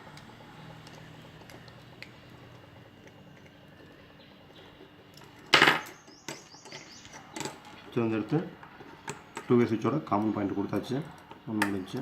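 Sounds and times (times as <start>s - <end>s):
small clicks and handling noises: 0.1s - 5.5s, 8.6s - 12.0s.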